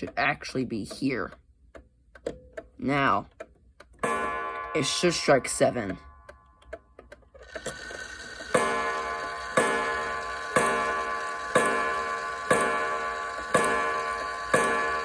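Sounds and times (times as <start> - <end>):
clock striking: 4.0 - 15.0.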